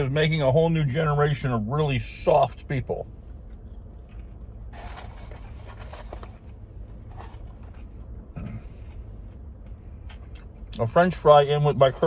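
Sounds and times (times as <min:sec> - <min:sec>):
steady low hum: 0:00.0 - 0:12.0
rustling and scraping handling noises: 0:03.3 - 0:08.1.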